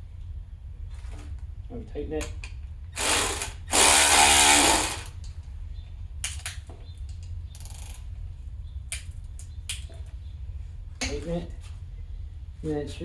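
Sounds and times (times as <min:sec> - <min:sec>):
steady low hum: 0:00.0 - 0:13.0
ratchet clicking: 0:03.0 - 0:05.1.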